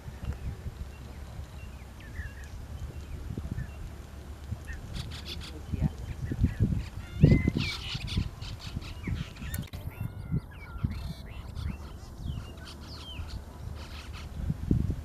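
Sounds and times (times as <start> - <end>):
starlings chirping and whistling: 0.3 - 3.9, 4.7 - 14.3.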